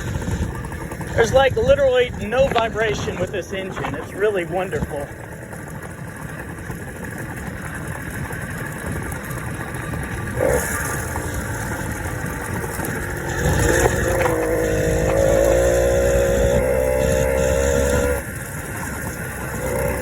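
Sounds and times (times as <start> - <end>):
motorized bicycle engine running: 0.0 - 20.0.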